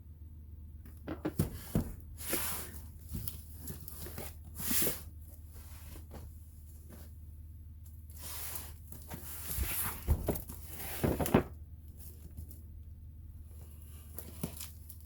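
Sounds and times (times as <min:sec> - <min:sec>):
steady low hum: 0:00.0 - 0:15.0
cardboard box rustling and scraping: 0:01.3 - 0:07.1, 0:08.2 - 0:12.3.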